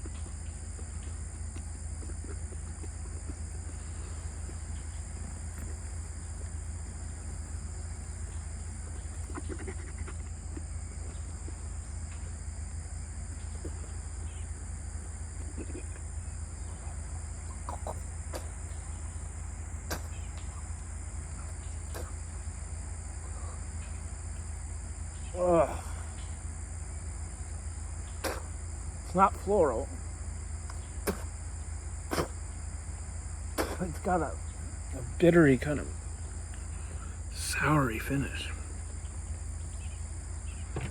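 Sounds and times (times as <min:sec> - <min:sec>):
high insect drone: 0:00.0 - 0:40.9
low hum: 0:00.0 - 0:40.9
faint animal calls: 0:07.1 - 0:11.7, 0:15.3 - 0:22.5, 0:23.1 - 0:24.0.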